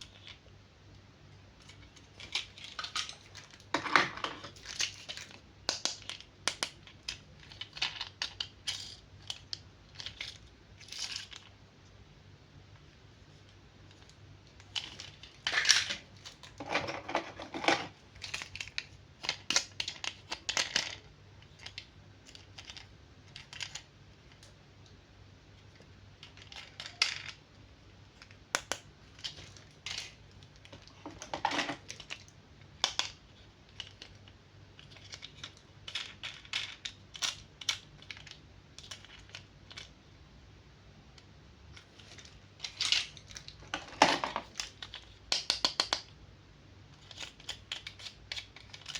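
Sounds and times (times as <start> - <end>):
plastic toys clicking: 14.6 - 24.5, 26.2 - 27.4, 28.2 - 39.9, 41.8 - 46.1, 46.9 - 48.9.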